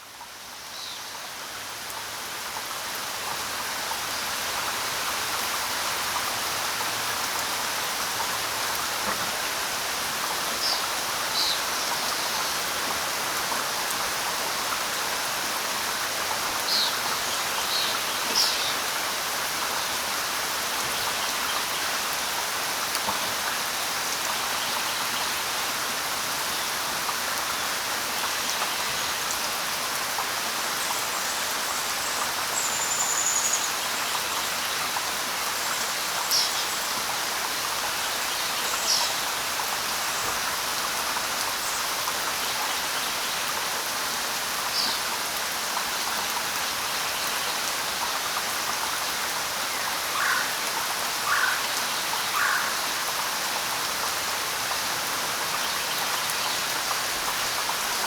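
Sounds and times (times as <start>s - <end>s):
light rain on leaves: 0.0s - 58.0s.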